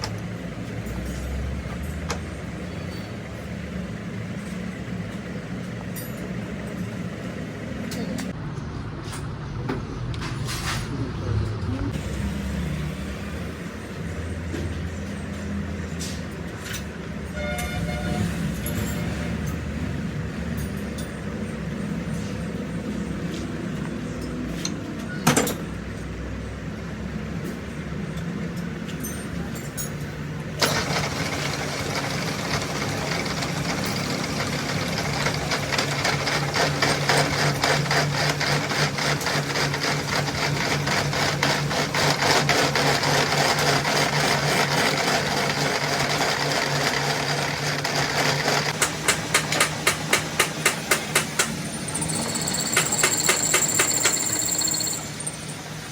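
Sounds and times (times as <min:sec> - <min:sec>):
rapid mechanical clatter: 0:29.7 - 0:55.5.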